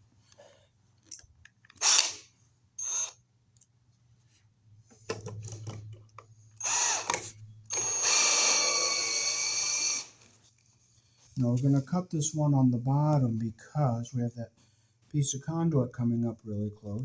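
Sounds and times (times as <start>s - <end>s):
power drill whining: 1.8s - 2.2s, 2.8s - 3.2s, 6.6s - 10.2s.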